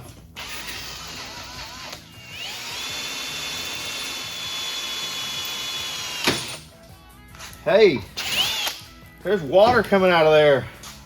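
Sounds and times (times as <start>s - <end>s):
electric drill boring through steel: 0.4s - 6.6s, 8.2s - 8.8s.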